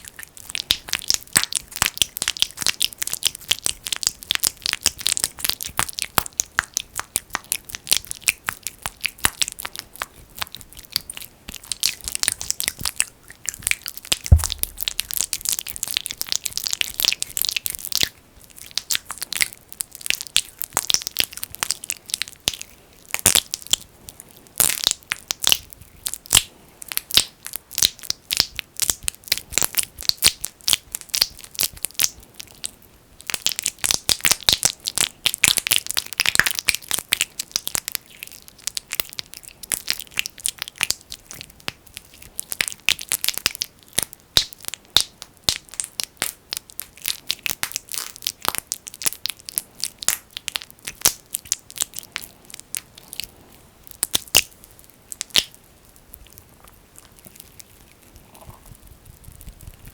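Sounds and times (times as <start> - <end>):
sticky crackles between fingers: 0.0 - 59.9
low thump: 14.2 - 15.2.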